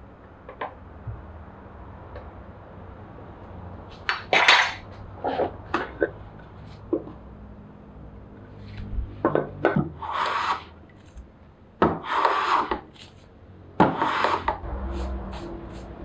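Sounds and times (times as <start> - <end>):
hand tool scraping wood: 10.0 - 11.2, 11.8 - 13.2, 13.8 - 15.9.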